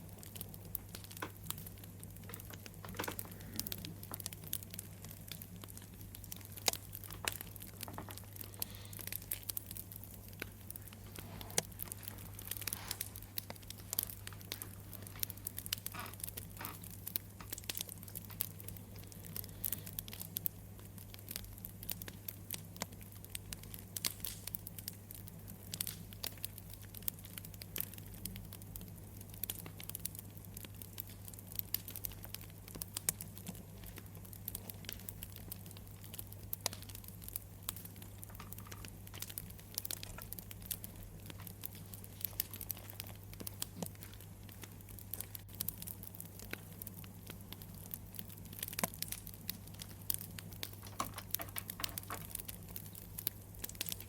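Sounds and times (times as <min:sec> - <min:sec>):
steady low hum: 0:00.0 - 0:22.4
campfire crackling: 0:00.0 - 0:54.0.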